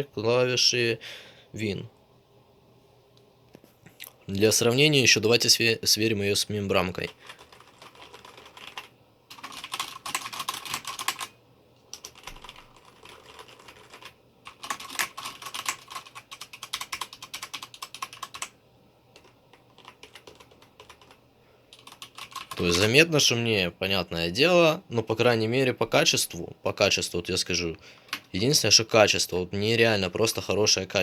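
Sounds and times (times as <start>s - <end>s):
mechanical keyboard typing: 7.0s - 18.6s, 19.2s - 23.0s
soft membrane keyboard typing: 7.0s - 22.9s.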